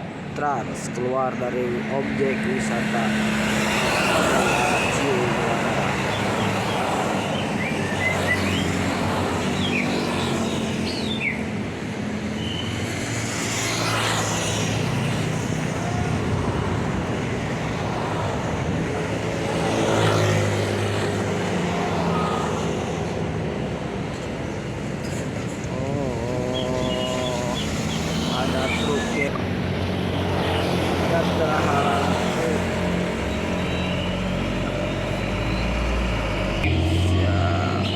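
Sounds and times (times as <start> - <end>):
bus diesel engine running: 20.6 - 29.8, 31.0 - 37.9.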